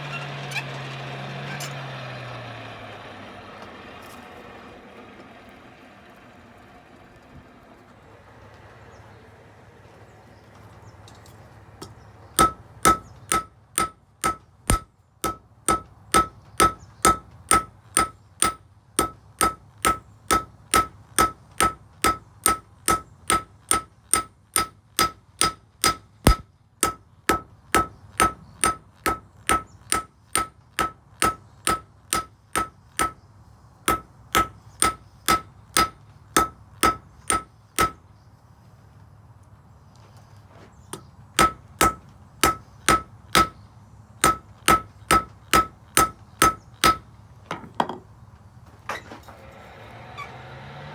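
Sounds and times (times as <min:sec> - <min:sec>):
hammer striking anvil: 0:12.4 - 0:33.2, 0:33.9 - 0:38.0, 0:41.4 - 0:43.6, 0:44.2 - 0:48.0.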